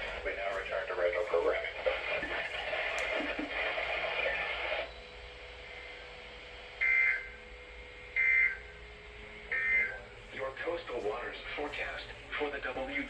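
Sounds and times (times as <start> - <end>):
radio broadcast voice: 0.0 - 4.9, 9.5 - 13.0
screechy data bursts: 9.5 - 10.5.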